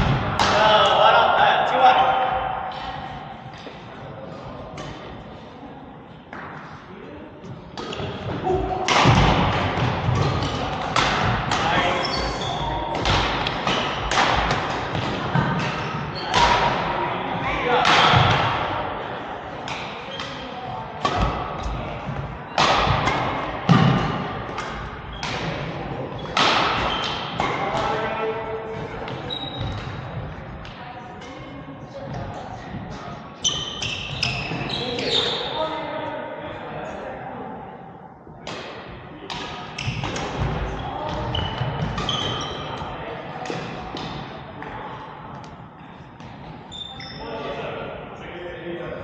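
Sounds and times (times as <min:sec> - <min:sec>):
racket hitting shuttlecock: 0:07.8 - 0:11.7, 0:12.3 - 0:17.0, 0:17.8 - 0:18.8, 0:21.0 - 0:27.9, 0:38.4 - 0:42.6, 0:43.4 - 0:44.8
brief squeaks: 0:46.7 - 0:47.2.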